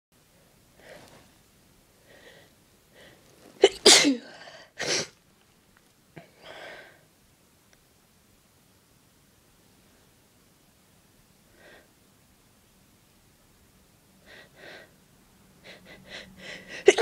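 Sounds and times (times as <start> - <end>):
person sneezing: 3.6 - 5.1, 16.8 - 17.0.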